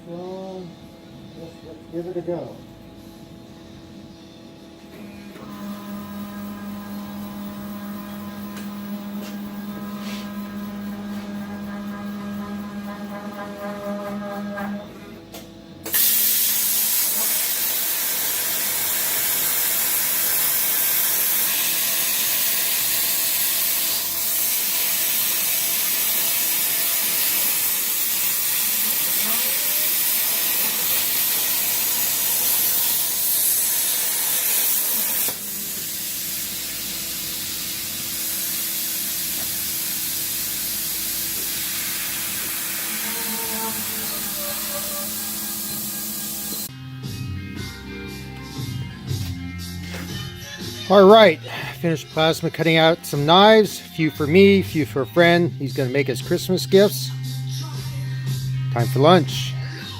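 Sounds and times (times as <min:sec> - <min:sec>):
steady low hum: 0:00.0 - 0:15.9
plasma torch hissing: 0:15.8 - 0:46.7.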